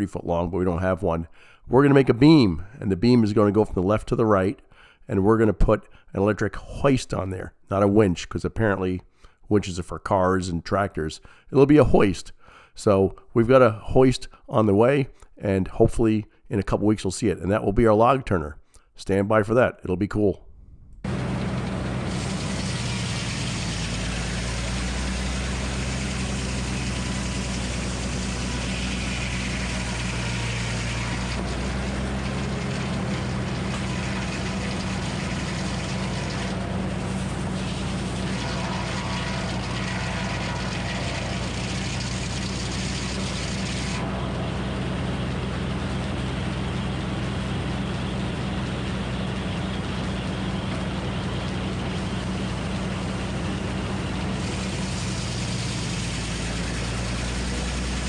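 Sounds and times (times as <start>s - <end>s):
engine running a sawmill: 21.0s - 58.0s.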